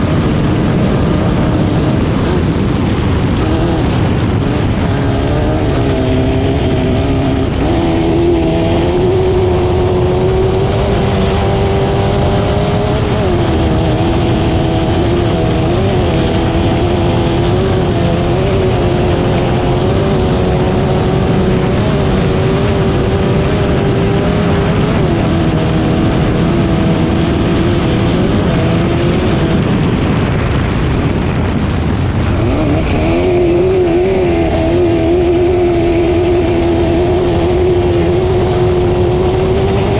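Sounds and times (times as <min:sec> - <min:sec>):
racing engine at high revs: 0:00.0 - 0:39.9.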